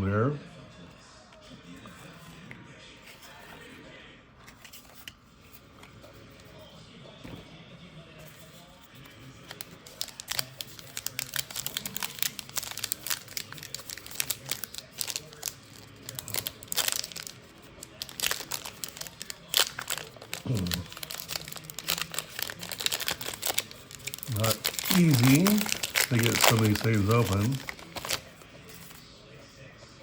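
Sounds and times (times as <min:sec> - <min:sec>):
faint tearing: 0:09.4 - 0:29.0
plastic wrapper crinkling: 0:09.4 - 0:29.0.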